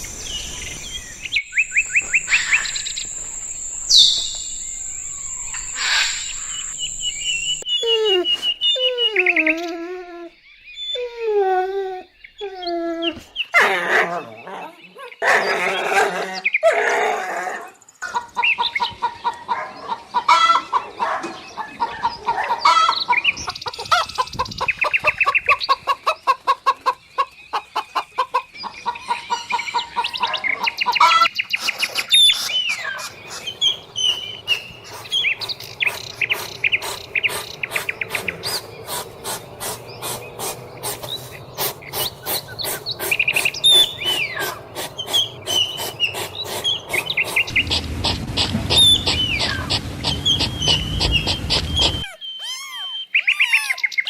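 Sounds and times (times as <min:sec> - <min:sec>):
chickens clucking: 0:18.0 - 0:52.1.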